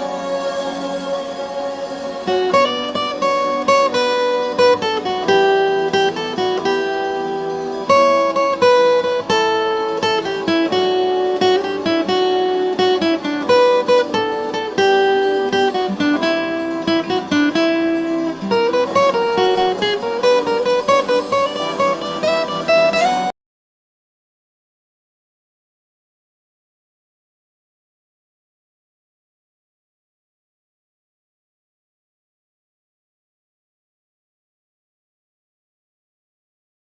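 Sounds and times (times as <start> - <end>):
plucked guitar melody: 0.0 - 23.4.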